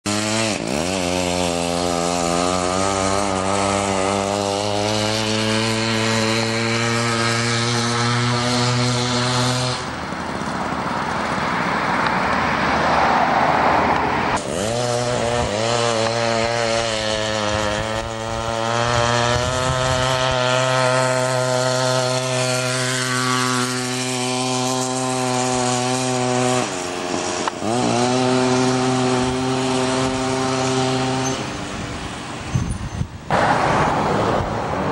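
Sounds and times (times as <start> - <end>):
two-stroke engine revving: 0.0 - 34.9
rushing noise: 31.4 - 34.9.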